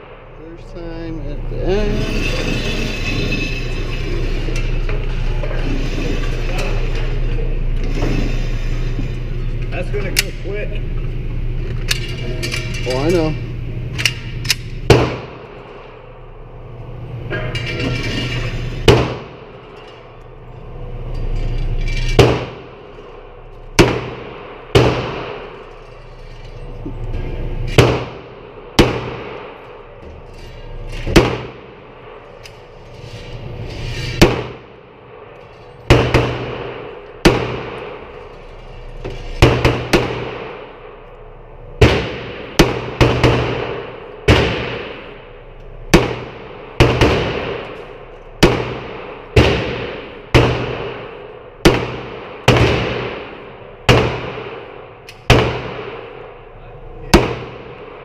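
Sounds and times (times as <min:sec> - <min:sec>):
gunshots with echo: 0:23.8 - 0:25.6, 0:27.8 - 0:29.7, 0:31.1 - 0:32.2, 0:35.9 - 0:38.1, 0:39.4 - 0:40.9, 0:41.8 - 0:45.2, 0:45.9 - 0:47.8, 0:48.4 - 0:56.4, 0:57.1 - 0:58.0.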